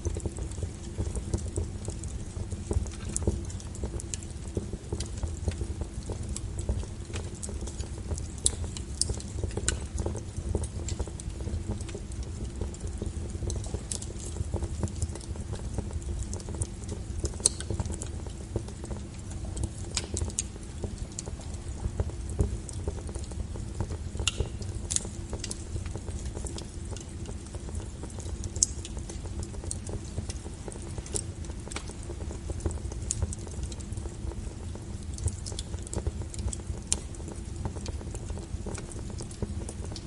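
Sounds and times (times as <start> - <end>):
fire low rumble: 0.0 - 40.0
wood fire crackling and popping: 0.0 - 40.0.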